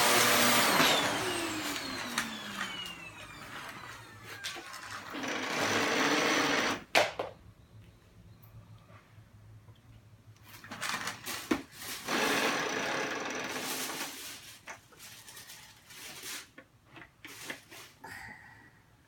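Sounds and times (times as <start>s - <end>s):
vacuum cleaner running: 0.0s - 6.8s, 11.9s - 14.4s.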